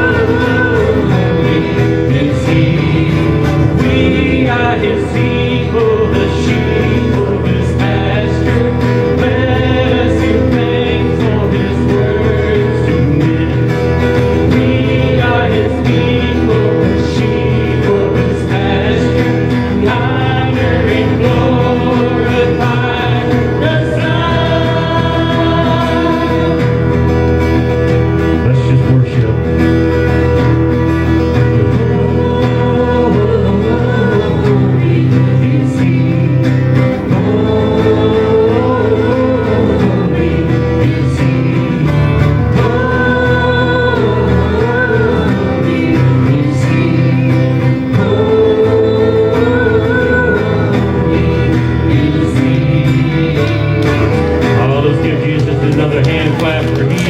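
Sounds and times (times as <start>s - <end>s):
band with guitar: 0.0s - 57.0s
worship singing: 0.0s - 57.0s.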